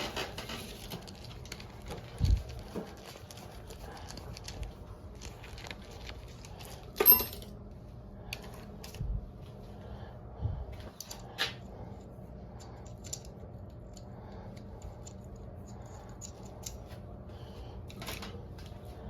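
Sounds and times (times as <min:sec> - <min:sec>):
steady low hum: 0:00.0 - 0:19.0
metal parts and tools clicking: 0:07.0 - 0:07.5.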